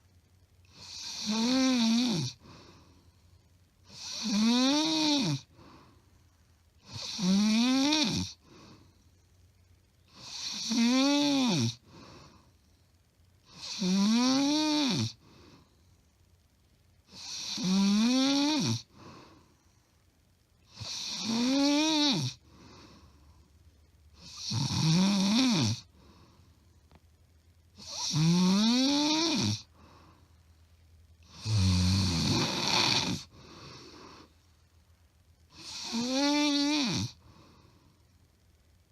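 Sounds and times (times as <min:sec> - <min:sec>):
woman snoring loudly: 0:00.7 - 0:02.5, 0:03.9 - 0:05.5, 0:06.8 - 0:08.5, 0:10.1 - 0:11.9, 0:13.5 - 0:15.2, 0:17.1 - 0:19.1, 0:20.7 - 0:22.4, 0:24.2 - 0:25.9, 0:27.8 - 0:29.7, 0:31.2 - 0:34.3, 0:35.5 - 0:37.3.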